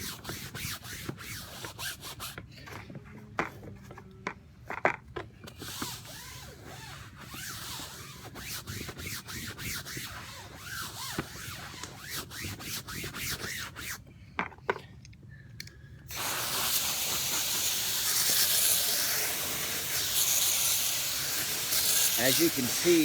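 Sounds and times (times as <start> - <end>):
window screen scrubbed with soap: 0.0 - 2.4, 5.5 - 14.0, 16.1 - 23.0
water spraying from a hose: 16.1 - 23.0.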